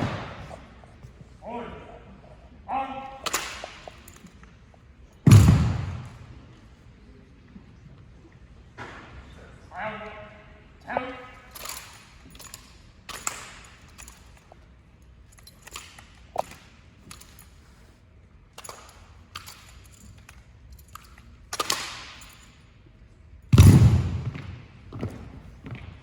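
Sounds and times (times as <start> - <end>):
heavy thud with ringing tail: 5.3 - 6.3, 23.5 - 24.6
drill rifles slapped and clacked: 18.6 - 22.5.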